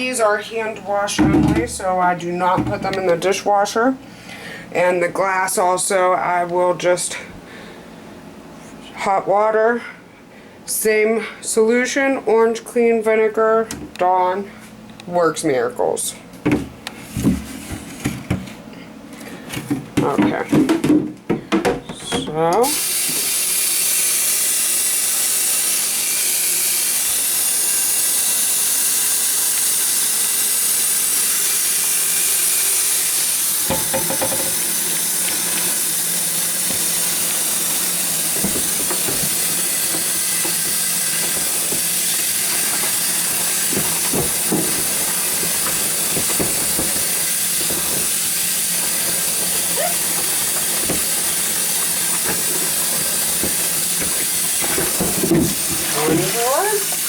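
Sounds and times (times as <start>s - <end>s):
tap water running into sink: 22.5s - 57.0s.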